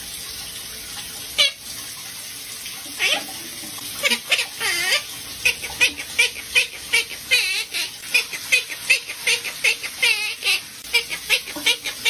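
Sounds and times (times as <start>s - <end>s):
parrot chirping and squawking: 1.3s - 1.8s, 2.9s - 12.0s.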